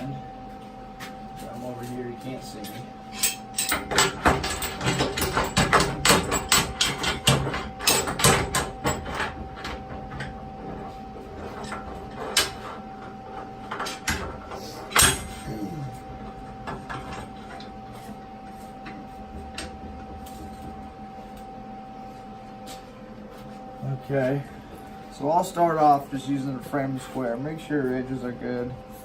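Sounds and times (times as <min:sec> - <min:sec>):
faint steady hum: 0:00.0 - 0:29.0
metal clamps clicking and clanking: 0:03.1 - 0:09.2.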